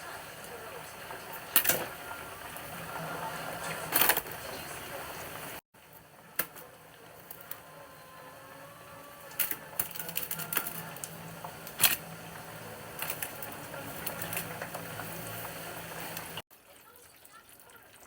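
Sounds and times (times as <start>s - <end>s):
steady low hum: 6.7s - 16.4s
food containers and utensils clattering: 12.9s - 15.1s.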